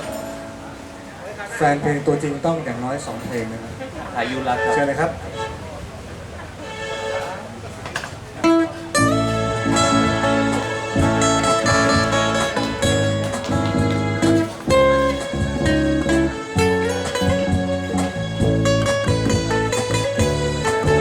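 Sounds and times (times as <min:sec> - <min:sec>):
guitar: 0:00.0 - 0:01.3, 0:08.4 - 0:21.0
band playing pop music: 0:09.0 - 0:21.0
pulsing bass line: 0:09.0 - 0:21.0.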